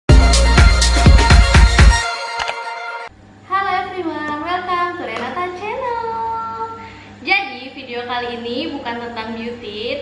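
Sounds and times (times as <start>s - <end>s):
upbeat electronic music: 0.1s - 3.1s.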